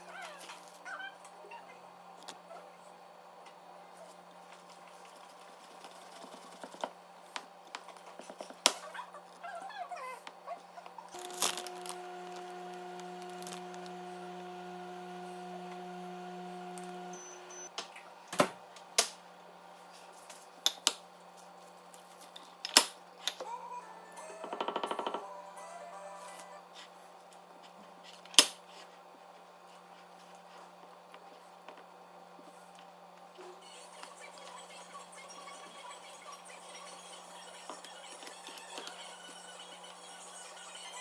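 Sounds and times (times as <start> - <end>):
electric appliance hum: 11.1 - 17.8.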